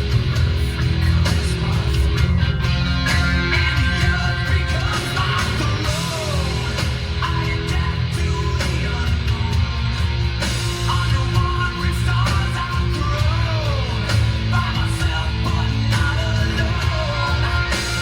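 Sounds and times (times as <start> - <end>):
heavy bass: 0.0 - 18.0
rock music on car stereo: 0.0 - 18.0.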